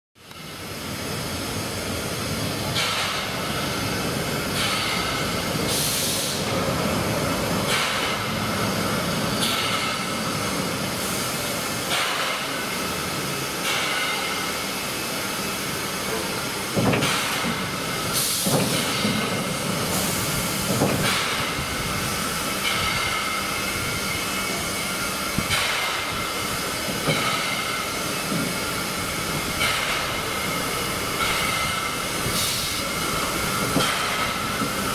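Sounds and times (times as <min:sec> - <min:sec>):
steam locomotive moving: 0:00.2 - 0:34.9.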